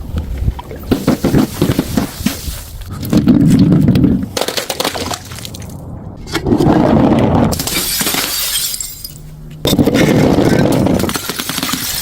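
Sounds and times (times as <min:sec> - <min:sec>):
glass bottles shattering: 0:07.6 - 0:10.1, 0:11.0 - 0:12.0
glass shards clinking: 0:07.6 - 0:10.1, 0:11.0 - 0:12.0.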